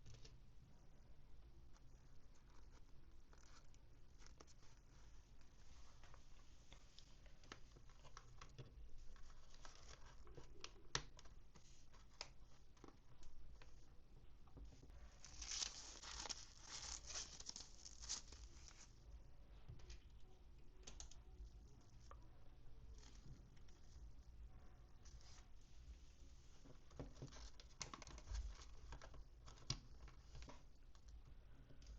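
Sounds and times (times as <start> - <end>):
packaging tearing and crinkling: 15.2 - 18.6.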